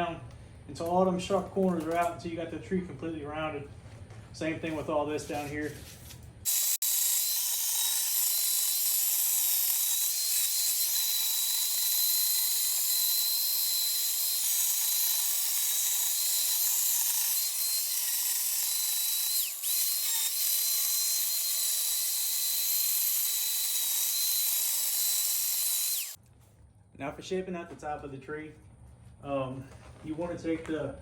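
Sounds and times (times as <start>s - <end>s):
chain shaving wood: 5.2s - 26.2s
electric chainsaw whining: 6.5s - 26.2s.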